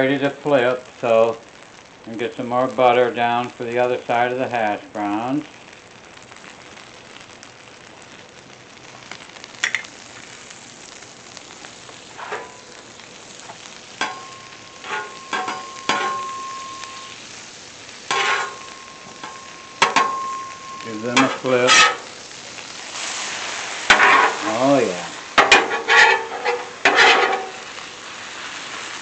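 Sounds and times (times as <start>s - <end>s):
food sizzling on a griddle: 0.0s - 29.0s
metal spatula scraping griddle: 12.1s - 12.7s, 13.7s - 17.1s, 18.1s - 22.1s, 22.8s - 27.8s.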